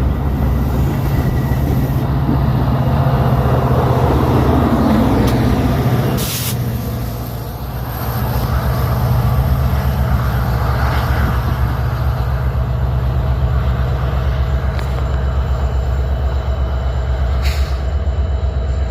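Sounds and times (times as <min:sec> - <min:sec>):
diesel locomotive engine drone: 0:00.0 - 0:18.9
brief hisses: 0:06.2 - 0:06.6.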